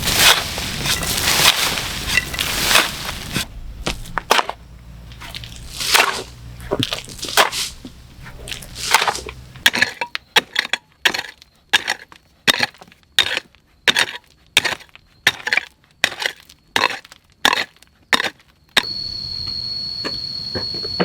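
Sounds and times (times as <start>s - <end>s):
hand tool crunching into wood: 0.0s - 18.9s
high insect trill: 18.8s - 21.0s.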